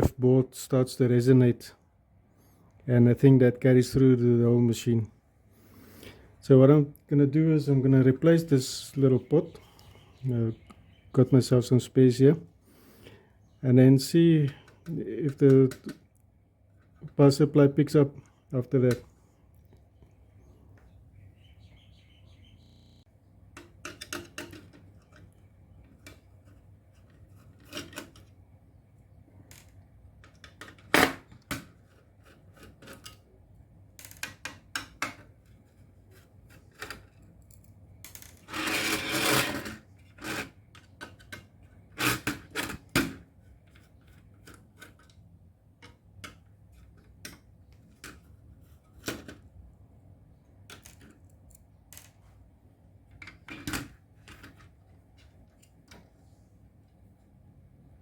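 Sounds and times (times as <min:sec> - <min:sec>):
tools clicking and knocking: 0:23.5 - 0:25.4.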